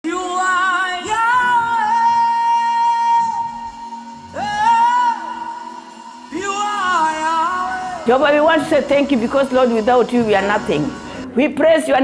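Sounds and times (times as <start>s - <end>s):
person singing long held notes: 0.0s - 8.8s.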